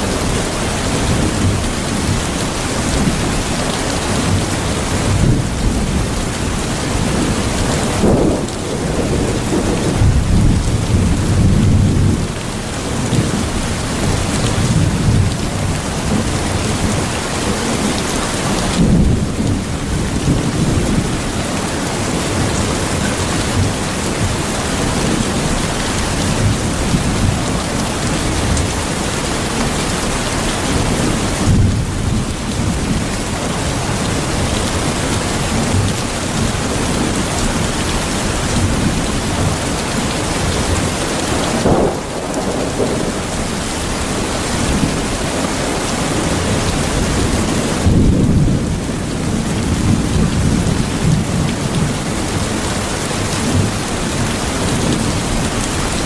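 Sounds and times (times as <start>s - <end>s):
steady rain: 0.0s - 56.0s
low rolls of thunder: 7.0s - 12.4s, 41.3s - 52.0s.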